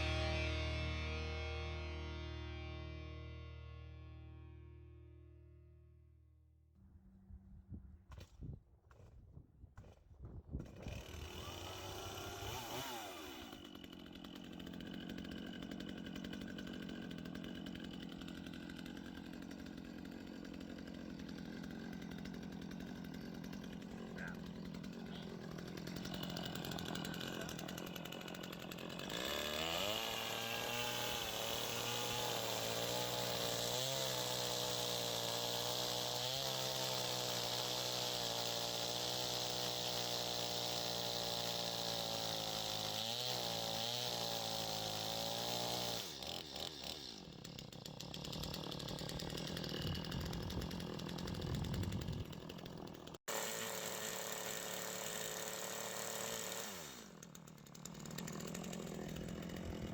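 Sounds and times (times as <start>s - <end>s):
gas saw engine milling lumber: 10.6s - 59.9s.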